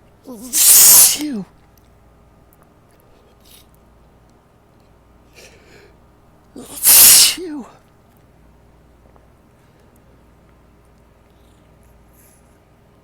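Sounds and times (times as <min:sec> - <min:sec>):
person sneezing: 0:00.3 - 0:01.5, 0:06.6 - 0:07.8
breathy intake: 0:00.4 - 0:01.4, 0:06.6 - 0:07.8.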